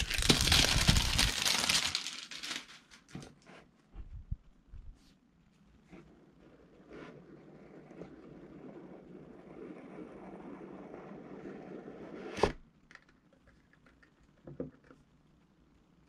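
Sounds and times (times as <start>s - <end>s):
packaging rustling and scraping: 0.0s - 3.2s.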